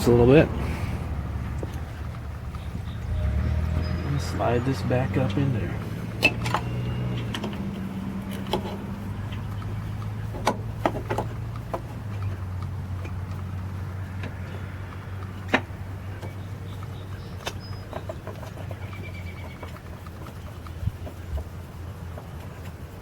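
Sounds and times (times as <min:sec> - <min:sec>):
steady low hum: 0:00.0 - 0:23.0
fuel filter clicking into housing: 0:04.7 - 0:23.0.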